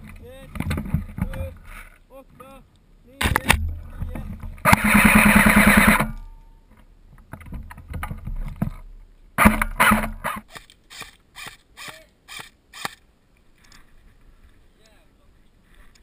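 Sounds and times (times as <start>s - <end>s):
airsoft rifle firing bursts: 4.6s - 6.2s
sharp clicks: 9.4s - 13.8s.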